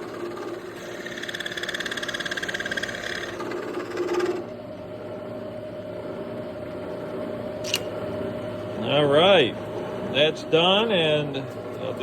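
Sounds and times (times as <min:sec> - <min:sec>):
milling machine cutting metal: 0:00.0 - 0:04.4.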